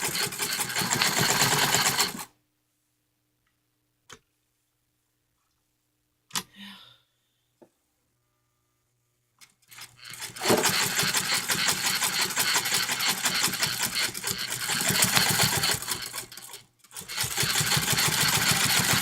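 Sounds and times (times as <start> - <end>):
electric sewing machine stitching: 0.0 - 2.3, 9.7 - 19.0.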